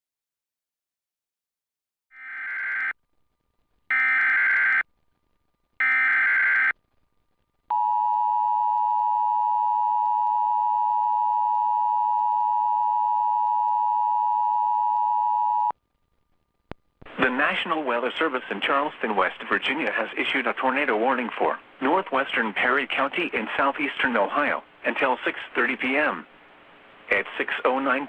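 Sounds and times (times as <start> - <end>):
loud steady alert tone: 5.8 - 6.7.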